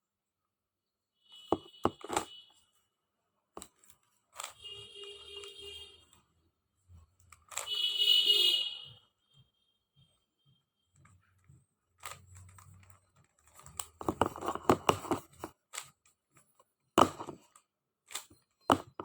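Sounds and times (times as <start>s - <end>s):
plastic puzzle cube clicking: 1.9s - 2.3s, 3.6s - 4.6s, 7.2s - 7.7s, 12.0s - 16.1s, 17.0s - 19.0s.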